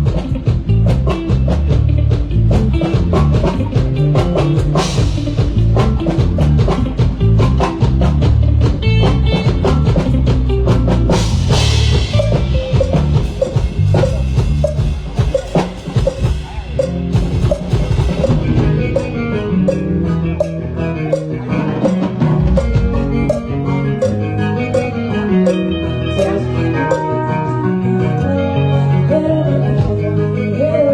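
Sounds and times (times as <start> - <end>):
drum kit fast beat: 0.0 - 24.9
low bass notes: 0.0 - 30.9
pitched instrument notes: 11.1 - 29.0
cymbal crash: 11.2 - 18.9.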